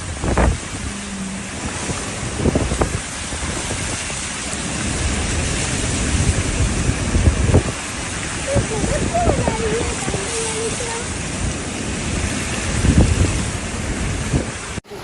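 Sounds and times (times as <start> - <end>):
floodwater rushing: 0.0 - 15.0
wind buffeting microphone: 0.0 - 15.0.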